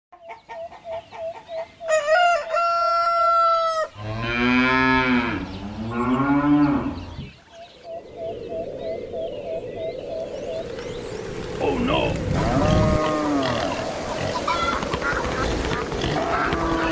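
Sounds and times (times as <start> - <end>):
chicken clucking: 0.1 - 3.8, 12.4 - 16.9
rooster crowing: 1.9 - 4.0
cow mooing: 4.0 - 7.1, 12.3 - 14.4.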